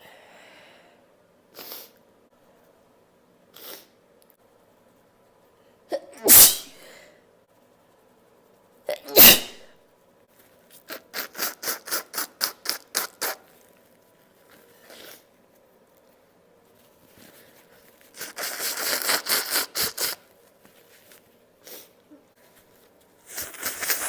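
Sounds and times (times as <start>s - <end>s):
person sneezing: 5.9s - 7.0s, 9.0s - 9.7s, 10.9s - 13.4s, 18.2s - 20.2s, 23.3s - 24.0s.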